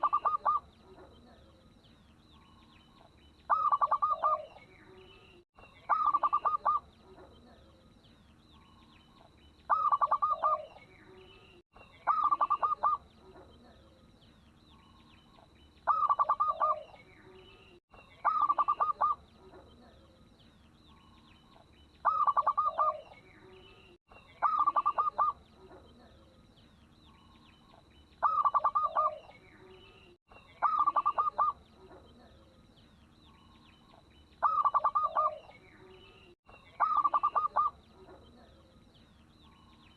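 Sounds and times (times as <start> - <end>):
dove cooing: 0.0 - 1.5, 3.5 - 4.7, 5.9 - 7.7, 9.7 - 10.9, 12.0 - 13.9, 15.9 - 17.0, 18.2 - 20.0, 22.0 - 23.2, 24.4 - 26.2, 28.2 - 29.4, 30.6 - 32.4, 34.4 - 35.6, 36.8 - 38.7
small birds chirping: 0.0 - 39.9.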